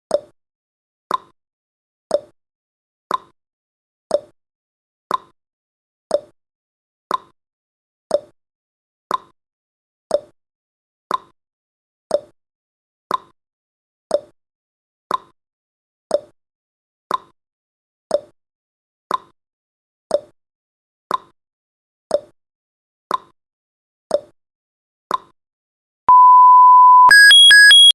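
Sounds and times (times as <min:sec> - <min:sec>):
long steady beep: 0:26.1 - 0:27.9
timer ticking: 0:27.0 - 0:27.9.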